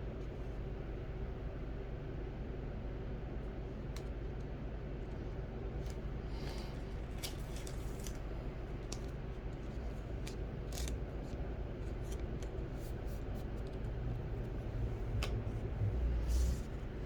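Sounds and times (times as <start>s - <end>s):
low steady hum: 0.0s - 17.0s
cards being handled: 5.9s - 14.0s
wrapping crinkling: 6.4s - 13.8s.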